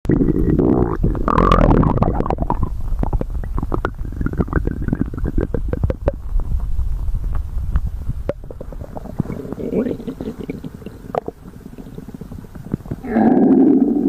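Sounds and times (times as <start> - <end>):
stomach rumbling and gurgling: 0.0 - 14.0.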